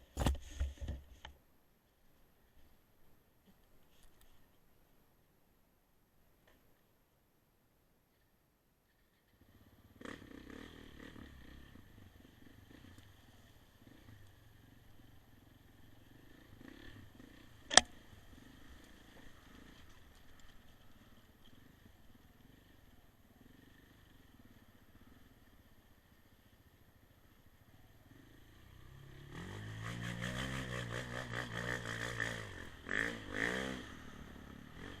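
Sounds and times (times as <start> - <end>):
motorcycle engine revving: 9.3 - 27.0, 27.6 - 35.0
sharp click: 17.6 - 18.0.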